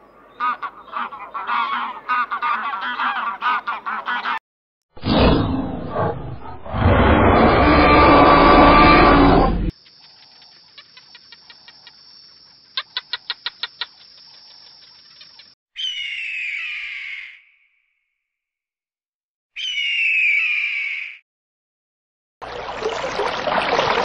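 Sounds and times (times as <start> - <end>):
harsh noisy animal call: 5.9 - 9.7
sharp ticks: 9.7 - 12.1, 12.7 - 15.6
quick chirps: 9.7 - 15.6
loud squawk: 15.8 - 17.5, 19.6 - 21.2.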